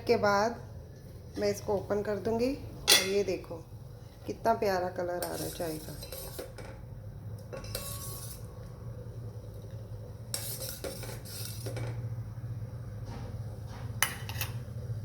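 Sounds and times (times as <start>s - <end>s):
steady low hum: 0.0s - 15.0s
metal spoon stirring in saucepan: 4.5s - 6.8s, 7.4s - 8.7s, 9.6s - 12.0s.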